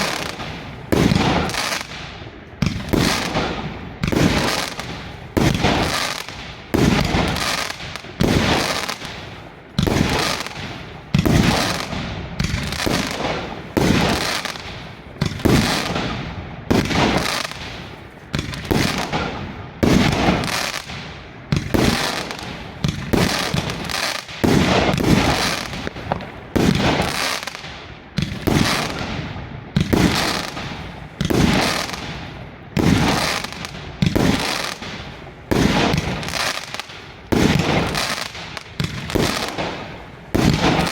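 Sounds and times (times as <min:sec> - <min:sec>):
firework cake bangs: 0:18.4 - 0:27.5, 0:32.8 - 0:40.9.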